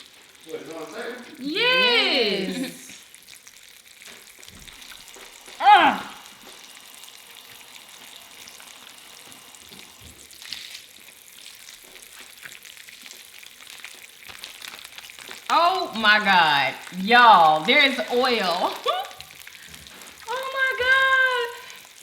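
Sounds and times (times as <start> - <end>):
food sizzling on a grill: 0.0 - 22.0
person exclaiming: 1.4 - 3.0, 5.6 - 6.3, 15.5 - 19.2, 20.3 - 21.8.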